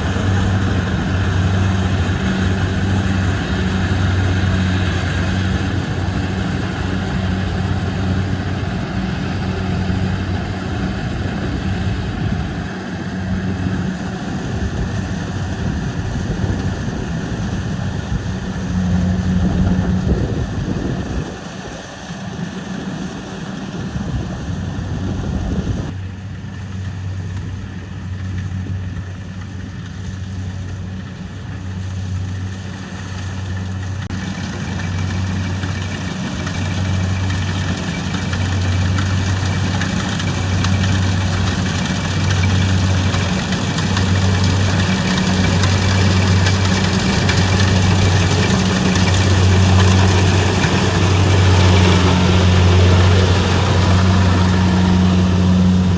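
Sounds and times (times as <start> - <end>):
diesel engine humming: 0.0 - 55.9
rush of machine noise: 33.7 - 55.9.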